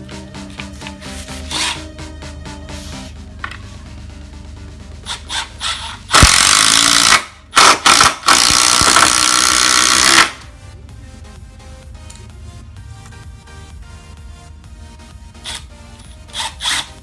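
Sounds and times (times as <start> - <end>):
impact driver hammering: 5.0 - 10.4, 15.4 - 17.0.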